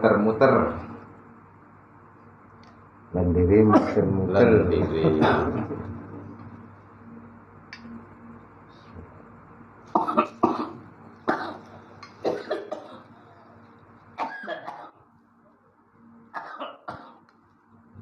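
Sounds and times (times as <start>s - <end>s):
man coughing: 3.7s - 4.1s, 4.8s - 6.0s, 10.0s - 13.5s, 14.2s - 15.0s, 16.4s - 17.2s.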